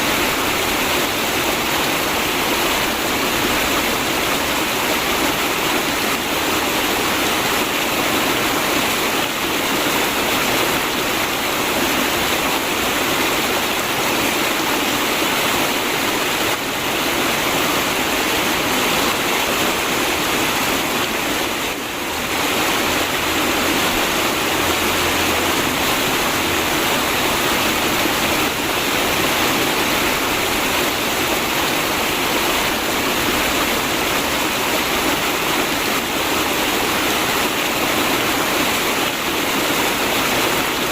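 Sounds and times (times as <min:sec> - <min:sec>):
river water gurgling: 0:00.0 - 0:40.9.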